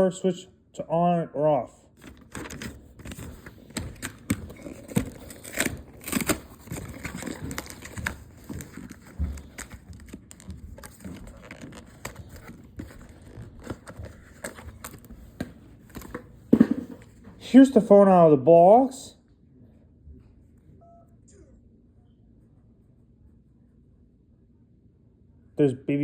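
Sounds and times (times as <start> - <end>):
packaging crinkling and rustling: 2.0 - 17.2.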